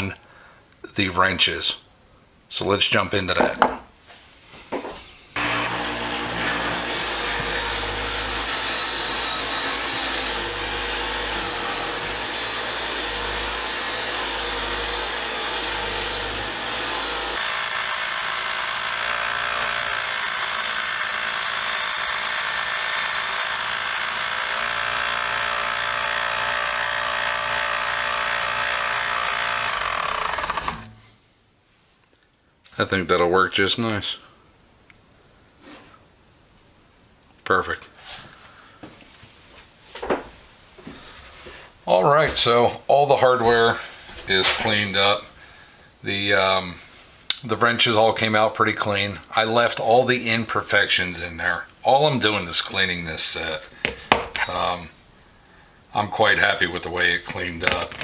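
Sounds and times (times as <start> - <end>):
power tool motor running: 5.0 - 31.1.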